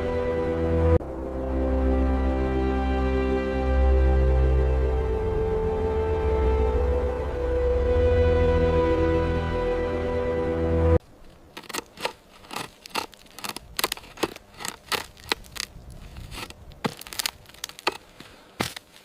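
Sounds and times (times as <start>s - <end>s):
music: 0.0s - 11.0s
sharp crackling snaps: 11.2s - 19.0s.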